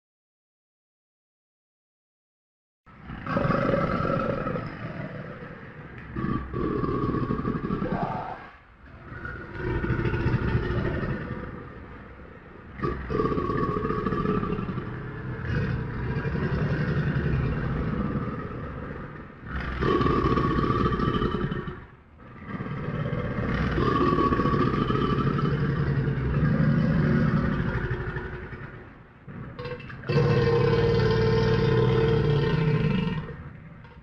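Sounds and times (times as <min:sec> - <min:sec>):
crocodile growling: 0:03.0 - 0:34.0.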